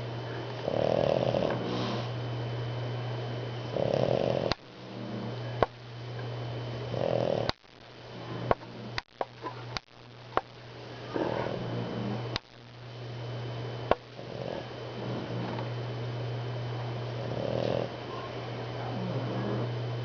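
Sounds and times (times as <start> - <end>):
steady low hum: 0.0 - 20.0
person snoring: 0.6 - 2.1, 3.7 - 5.3, 6.9 - 7.6, 14.2 - 15.6, 17.2 - 18.0.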